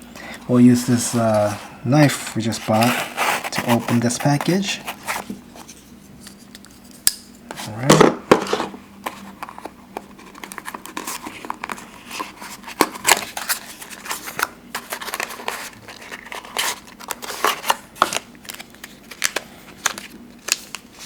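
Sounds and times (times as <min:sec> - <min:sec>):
packaging crinkling and tearing: 0:09.0 - 0:21.0.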